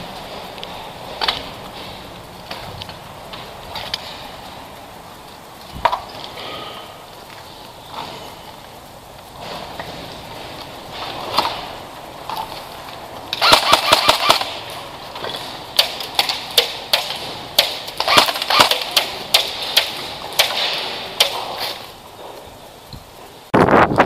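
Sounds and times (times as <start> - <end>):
gun clicks: 13.3 - 14.6, 15.8 - 21.4
airsoft guns firing: 13.4 - 14.8, 15.4 - 21.8.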